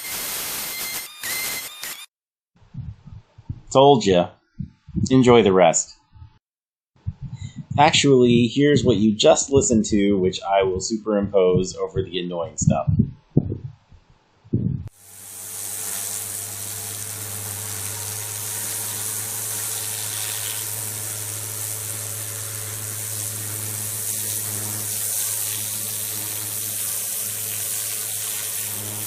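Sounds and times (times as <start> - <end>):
high-pressure water spray hiss: 0.0 - 1.0, 14.9 - 29.0
pressure washer motor hum: 14.9 - 29.0.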